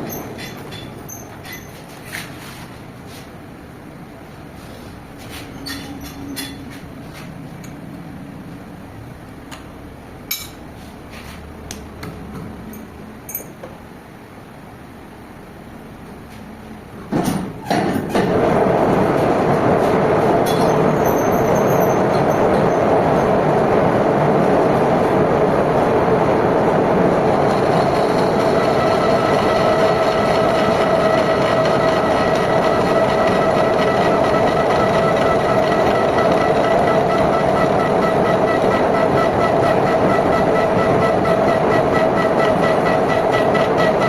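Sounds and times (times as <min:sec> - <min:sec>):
steady whine: 0:00.0 - 0:44.0
metal lathe running: 0:27.2 - 0:44.0.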